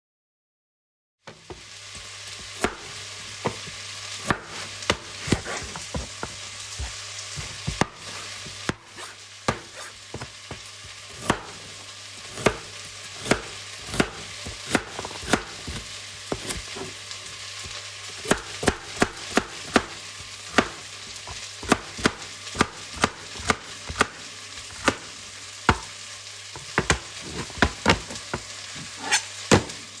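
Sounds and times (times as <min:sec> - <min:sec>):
food frying with steady hiss: 0:01.3 - 0:30.0
knife chopping: 0:01.5 - 0:26.0, 0:26.6 - 0:30.0
utensils clattering: 0:26.6 - 0:29.9.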